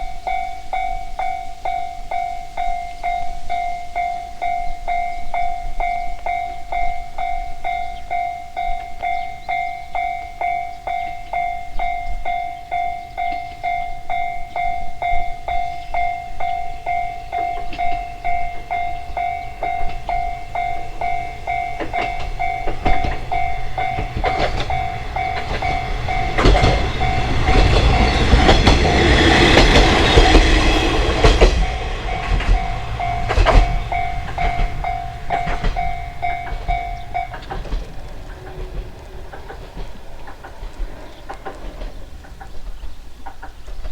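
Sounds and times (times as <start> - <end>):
level-crossing warning bell ringing: 0.0 - 43.7
train wheels clacking over rail joints: 16.3 - 43.9.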